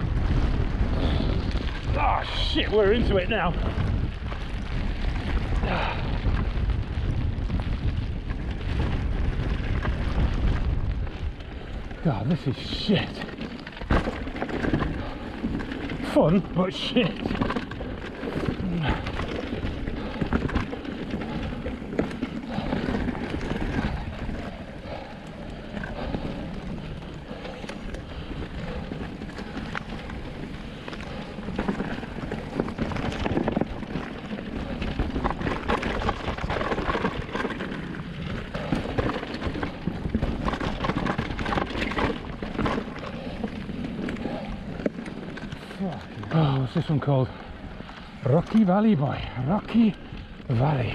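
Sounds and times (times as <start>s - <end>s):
bike tyres rolling over ground: 0.0s - 50.9s
wind buffeting microphone: 0.0s - 50.9s
bike knocks and rattles: 12.9s - 45.7s.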